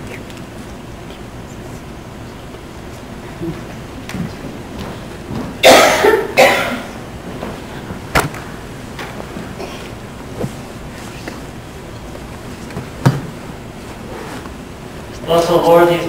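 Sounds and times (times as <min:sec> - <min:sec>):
person coughing: 0:05.6 - 0:07.0.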